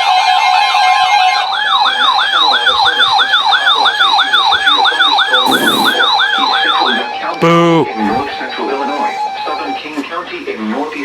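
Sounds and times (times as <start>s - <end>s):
electronic alert siren: 1.9s - 7.4s
burst of static: 5.5s - 6.0s.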